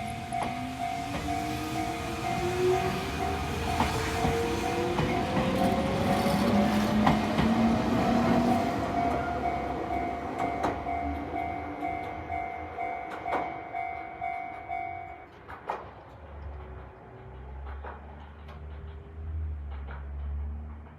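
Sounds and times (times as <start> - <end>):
level crossing alarm ringing: 0.0 - 6.7, 8.8 - 15.2
electric train passing: 0.0 - 20.9
train wheel clacks: 0.0 - 20.9.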